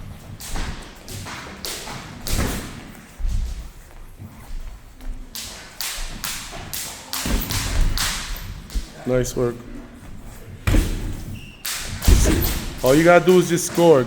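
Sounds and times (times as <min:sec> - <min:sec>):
boxing glove punches thudding: 0:10.6 - 0:11.2, 0:11.8 - 0:12.8.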